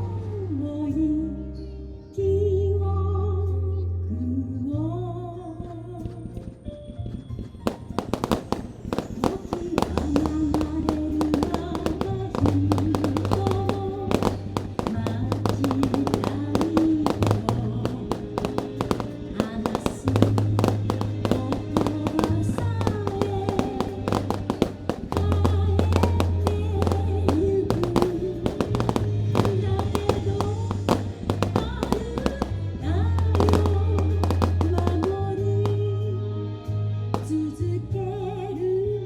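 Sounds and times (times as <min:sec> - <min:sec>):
fireworks bursting and crackling: 0:07.7 - 0:36.0, 0:37.2 - 0:37.6
loud music with singer: 0:09.2 - 0:37.9.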